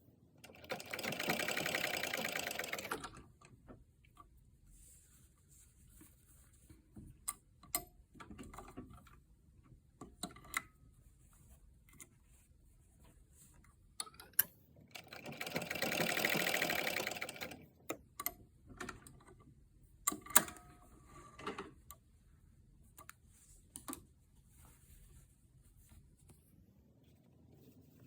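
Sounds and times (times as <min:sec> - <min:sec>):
sewing machine stitching: 0:00.4 - 0:03.2, 0:14.9 - 0:17.7.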